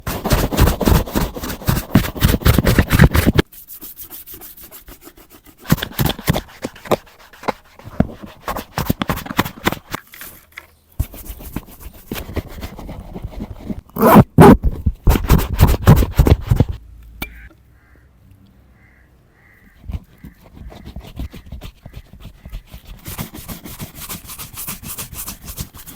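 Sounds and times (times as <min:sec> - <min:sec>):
brush scrubbing leather boots: 0:00.0 - 0:10.0, 0:11.0 - 0:13.8, 0:19.7 - 0:25.9.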